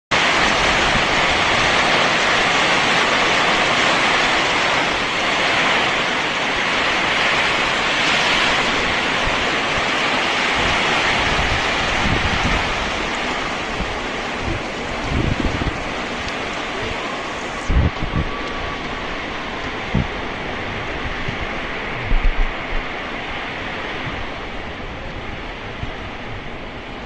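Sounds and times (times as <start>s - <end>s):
heavy rain falling: 0.1s - 27.0s.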